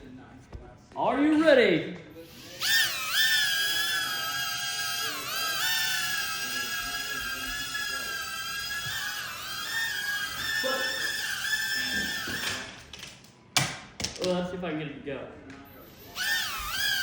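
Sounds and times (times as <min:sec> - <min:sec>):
toy helicopter motor whine: 0:02.2 - 0:12.8, 0:15.8 - 0:17.0.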